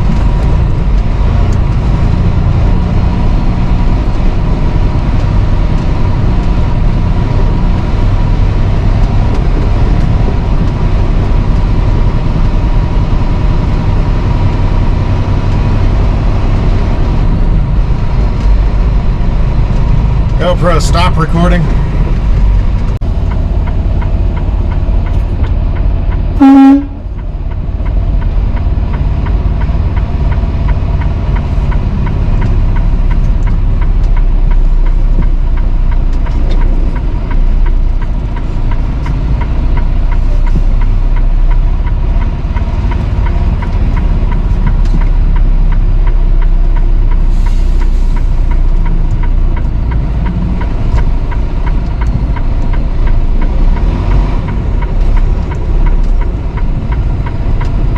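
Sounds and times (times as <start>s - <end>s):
truck engine and road rumble: 0.0s - 57.9s
truck horn blast: 26.4s - 27.2s.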